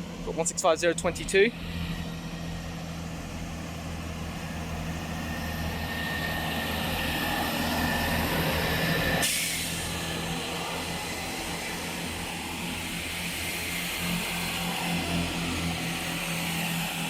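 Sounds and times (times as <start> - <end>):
train diesel engines whining: 0.0 - 17.0
air hiss: 9.2 - 9.9.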